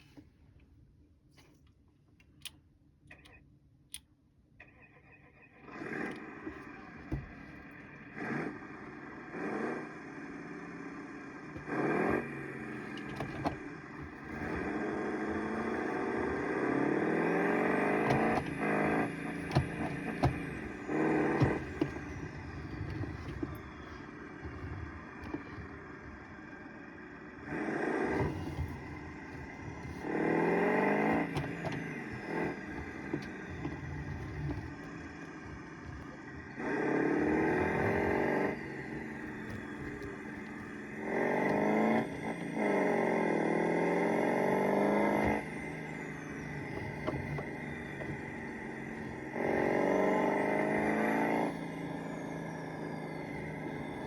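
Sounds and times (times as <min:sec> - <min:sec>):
turbocharged engine revving: 0:05.0 - 0:54.0.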